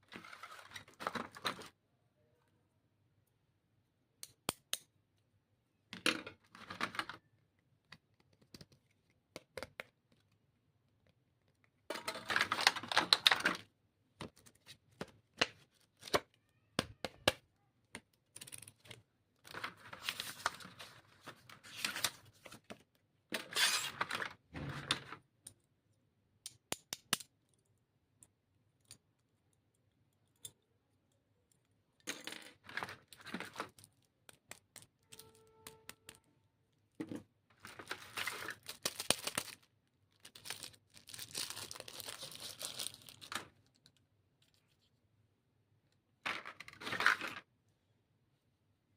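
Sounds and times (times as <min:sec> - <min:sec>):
packaging rustling and tearing: 0:37.7 - 0:43.4.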